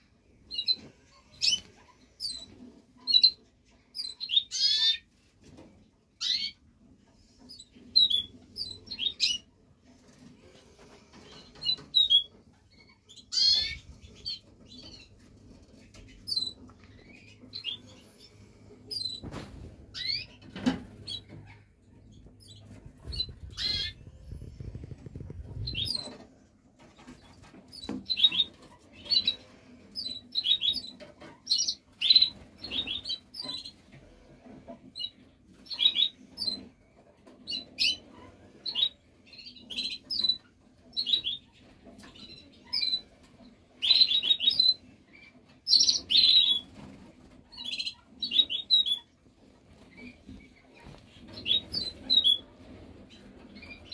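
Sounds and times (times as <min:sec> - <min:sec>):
canaries chirping and twittering: 0:00.1 - 0:53.9.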